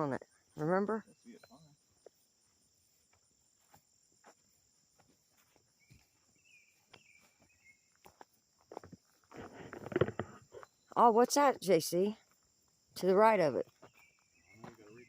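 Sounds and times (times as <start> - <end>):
crickets trilling: 0.0 - 15.0
faint wavering chirp: 0.2 - 3.0.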